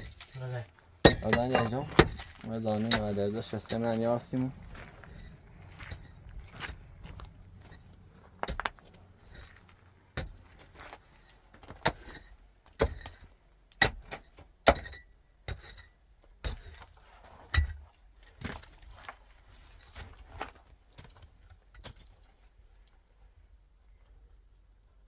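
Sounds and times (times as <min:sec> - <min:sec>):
sharp knocks with metallic ring: 0:01.0 - 0:02.3.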